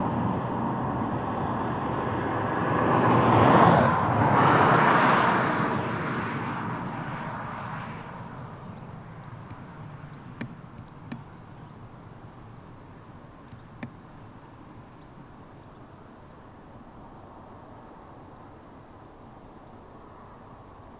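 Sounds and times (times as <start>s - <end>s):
diesel locomotive passing: 0.0s - 6.0s.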